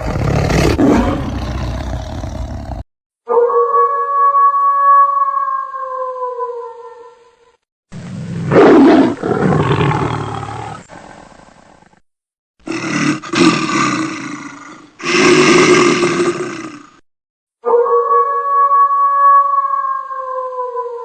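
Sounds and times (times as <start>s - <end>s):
big cat roaring: 0.0s - 2.8s, 8.0s - 11.4s, 12.6s - 17.0s.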